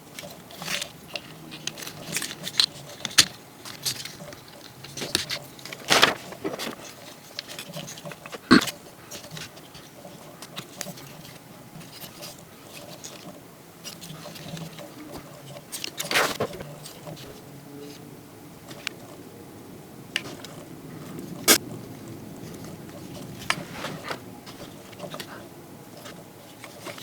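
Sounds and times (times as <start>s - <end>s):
plastic parts clicking: 0.1s - 17.3s
light rustling: 20.2s - 27.0s.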